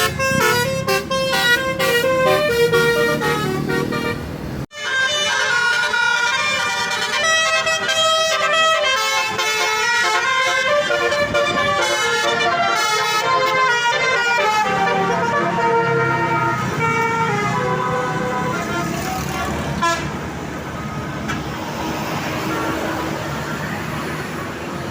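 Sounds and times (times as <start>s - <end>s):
multi-tone air horn melody: 0.0s - 19.2s, 19.8s - 20.2s.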